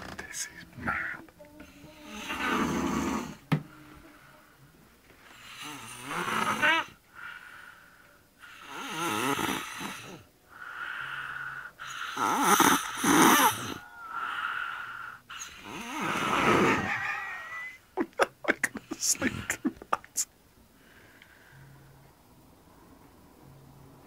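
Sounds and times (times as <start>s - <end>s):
woman snoring heavily: 1.6s - 4.4s, 5.2s - 17.7s.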